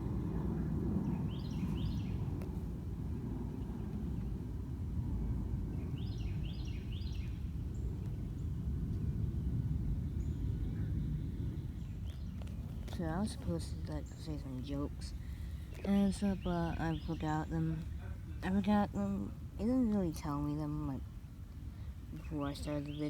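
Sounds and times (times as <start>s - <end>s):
small bird singing: 0.0s - 2.5s, 5.7s - 8.6s, 9.3s - 21.0s, 22.2s - 23.0s
low outdoor background rumble: 0.0s - 23.0s.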